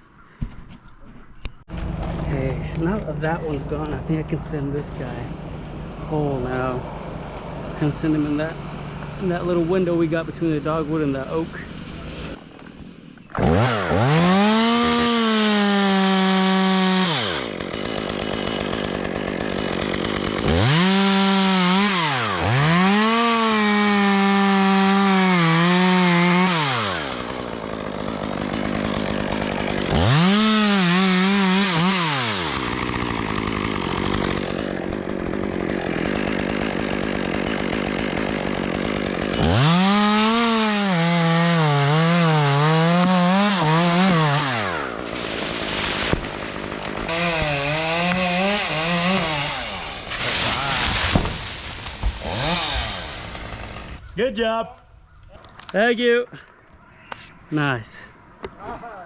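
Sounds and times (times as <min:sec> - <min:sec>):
chainsaw revving and idling: 0:01.7 - 0:54.1.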